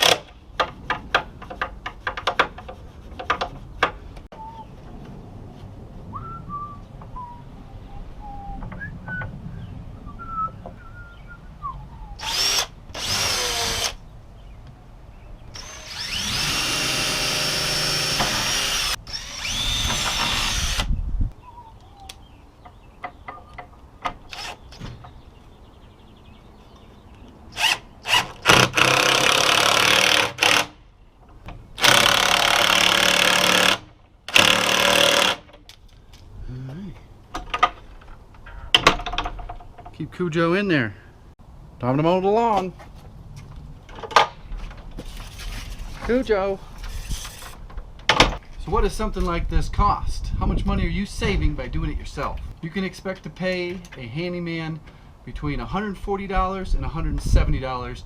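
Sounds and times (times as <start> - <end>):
power drill drilling: 12.2 - 14.0, 15.6 - 20.9.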